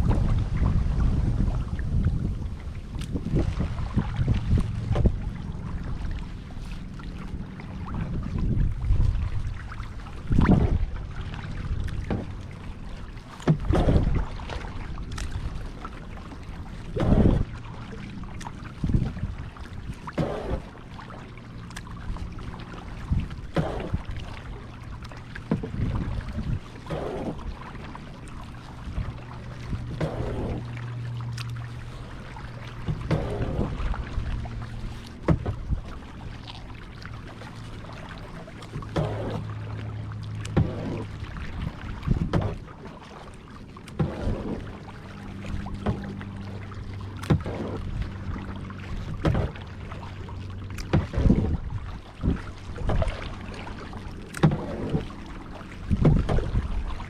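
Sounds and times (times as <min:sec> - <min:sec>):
low steady water rush: 0:00.0 - 0:57.0
paddle splashing through water: 0:00.0 - 0:57.0
paddle blade tick: 0:02.0 - 0:03.5, 0:11.6 - 0:57.0.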